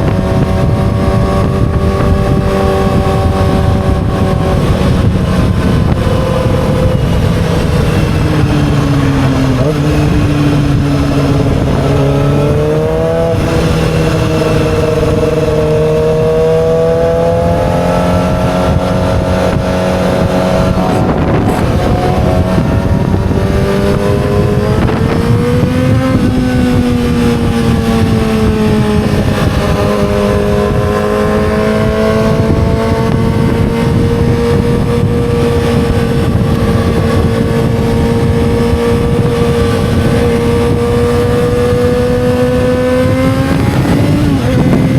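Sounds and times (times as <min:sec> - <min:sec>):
motorcycle engine running: 0:00.0 - 0:44.9.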